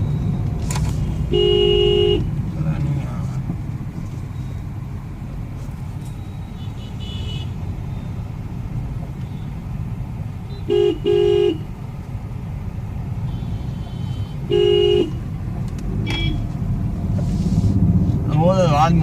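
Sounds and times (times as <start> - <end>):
road traffic rumble: 0.0 - 19.0
vehicle horn blasts: 1.0 - 2.3, 6.6 - 7.6, 10.5 - 11.7, 13.3 - 15.2, 16.0 - 16.5.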